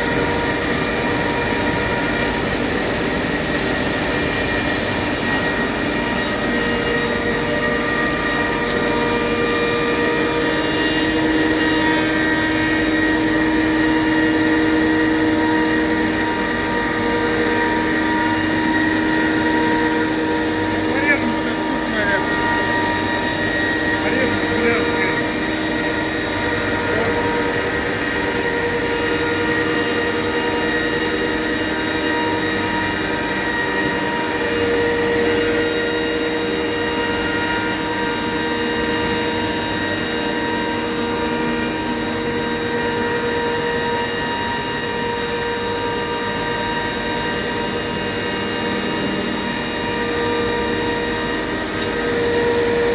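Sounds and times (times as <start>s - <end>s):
router whine: 0.0s - 52.9s
dust extraction hiss: 8.3s - 31.0s.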